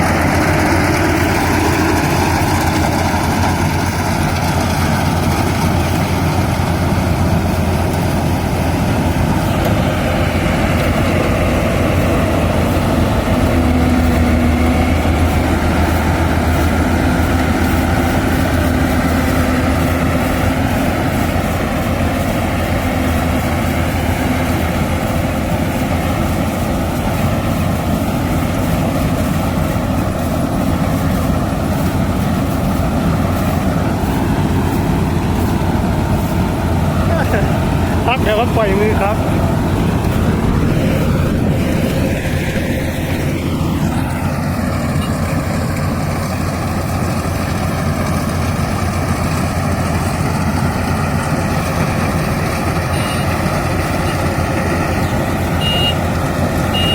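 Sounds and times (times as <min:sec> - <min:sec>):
combine harvester droning: 0:00.0 - 0:56.9.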